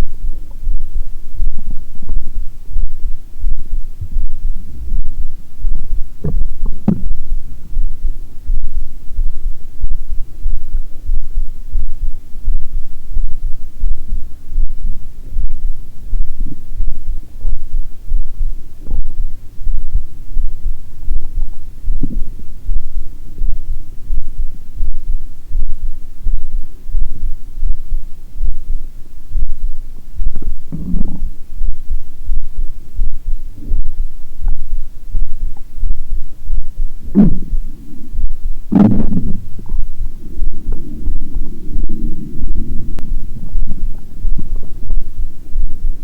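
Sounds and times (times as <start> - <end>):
stomach gurgle: 0.0 - 14.1, 16.2 - 22.9, 29.5 - 46.0
heartbeat thudding: 0.0 - 28.8, 29.4 - 46.0
stomach growling: 5.8 - 7.9, 21.2 - 22.4, 30.3 - 31.4, 37.0 - 45.9.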